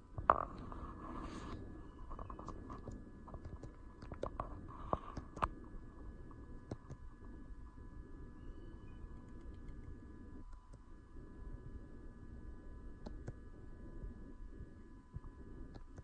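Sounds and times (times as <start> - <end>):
faint high whine: 0.0 - 16.0
faint clicks and handling noise: 0.1 - 7.1.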